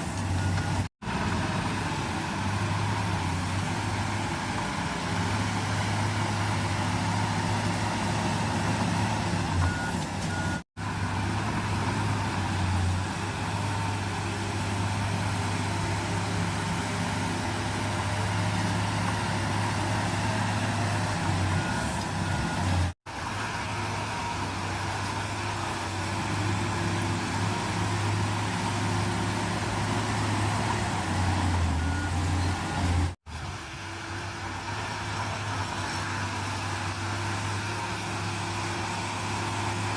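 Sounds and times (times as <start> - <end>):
bulldozer diesel engine humming: 0.0 - 39.9
reversing alarm beeps: 0.1 - 0.9, 9.6 - 10.6, 31.6 - 33.0.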